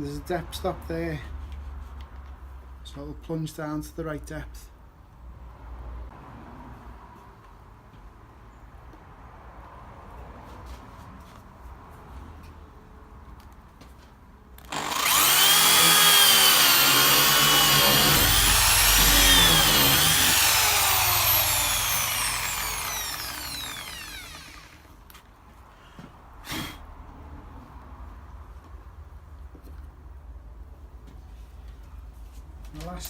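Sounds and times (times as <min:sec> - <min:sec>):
drill boring into wood: 0:14.6 - 0:24.9.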